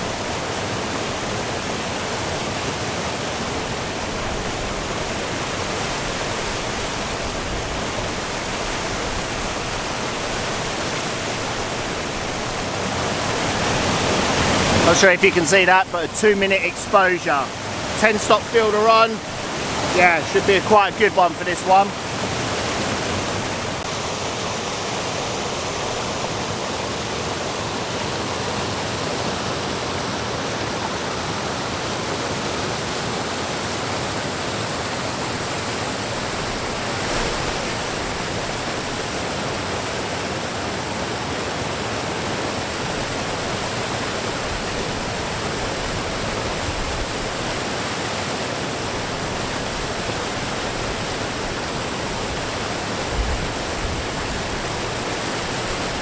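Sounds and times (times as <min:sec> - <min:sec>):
waterfall roaring: 0:00.4 - 0:29.9.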